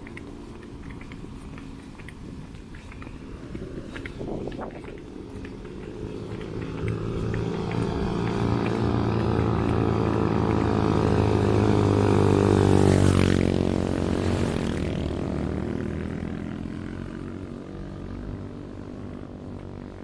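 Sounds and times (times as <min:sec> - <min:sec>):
engine passing by: 0:00.0 - 0:20.0.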